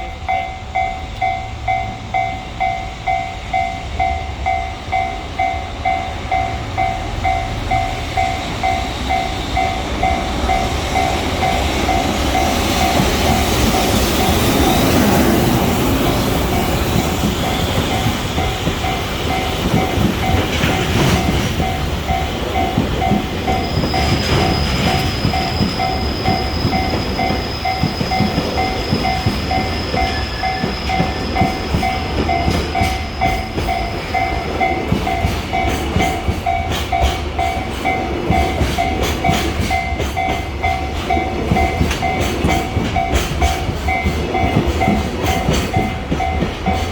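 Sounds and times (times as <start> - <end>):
freight train wagons clacking: 0.0 - 46.9
level-crossing warning bell: 0.0 - 46.9.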